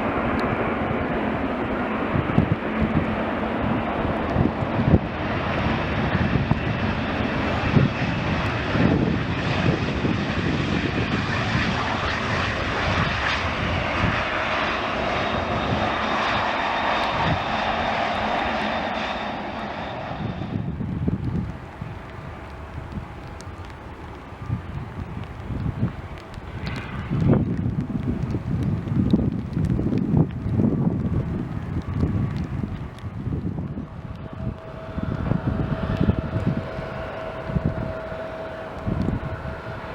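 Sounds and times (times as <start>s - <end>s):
airliner engines roaring: 0.0s - 39.9s
wind buffeting microphone: 0.0s - 39.9s
faint high whine: 34.2s - 39.9s.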